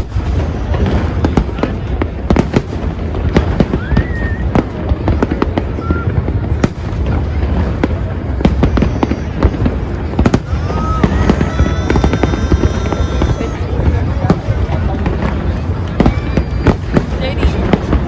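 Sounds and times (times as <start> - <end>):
firework bangs and crackles: 0.0 - 18.0
rising firework whistles: 3.4 - 6.8, 7.8 - 14.9, 15.8 - 18.0.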